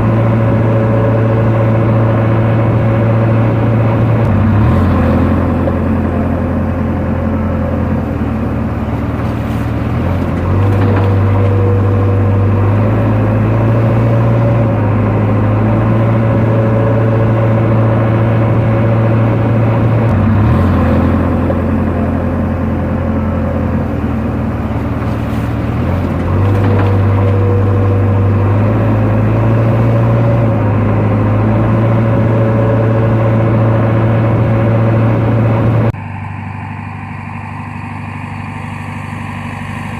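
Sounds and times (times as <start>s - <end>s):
diesel engine working hard: 0.0s - 39.9s.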